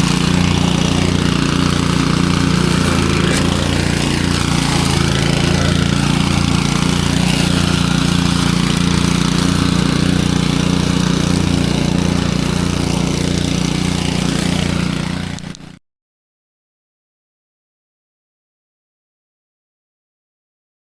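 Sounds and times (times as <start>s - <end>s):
lawn mower engine running: 0.0s - 15.8s.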